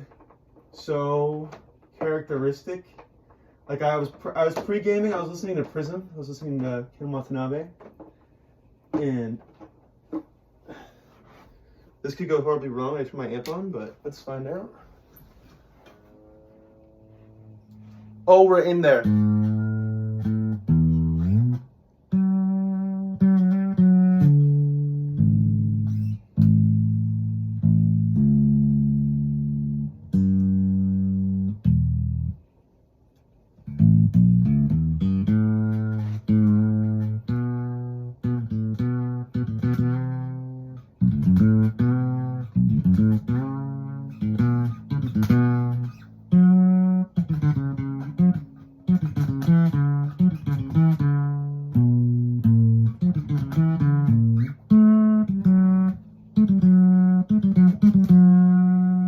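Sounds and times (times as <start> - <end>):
electric bass plucked notes: 15.9 - 32.5, 33.6 - 59.0.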